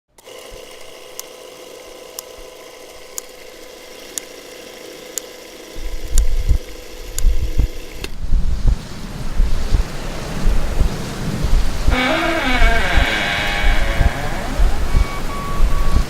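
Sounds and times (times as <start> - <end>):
steady hum: 1.0 - 16.0
sharp ticks: 5.1 - 8.8
loud low rumbling: 7.2 - 16.0.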